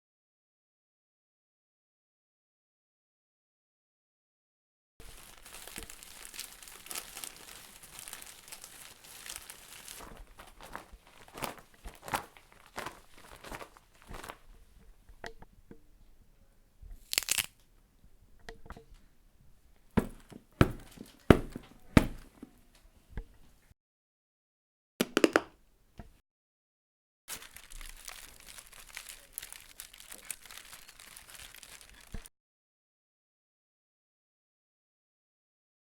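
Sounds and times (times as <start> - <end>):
sharp crunches: 5.0 - 14.4, 17.0 - 17.6
steady crackling: 5.0 - 15.0
material crinkling and crumpling: 5.0 - 15.2, 17.0 - 17.6, 19.8 - 22.7, 27.3 - 32.3.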